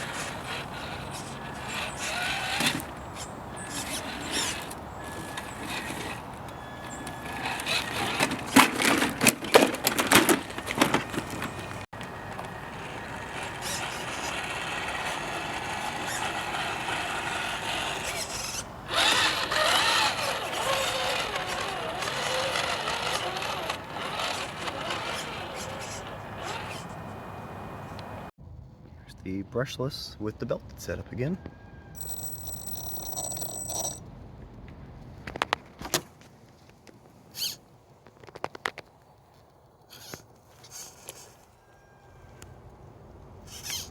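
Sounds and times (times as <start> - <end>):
electric motor and gearbox whining: 0.0 - 28.3, 32.0 - 34.0.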